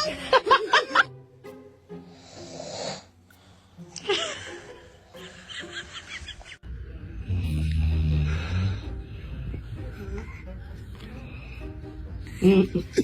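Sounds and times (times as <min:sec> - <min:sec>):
background music: 0:00.0 - 0:13.0
person snoring: 0:02.1 - 0:03.1, 0:07.2 - 0:09.2.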